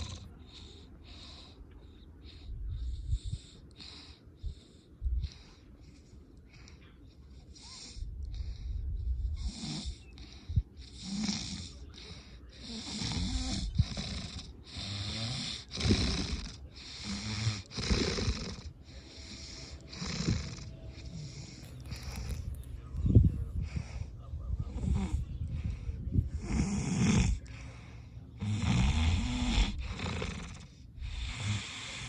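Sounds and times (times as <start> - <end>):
person snoring: 12.6 - 22.5, 26.3 - 32.0.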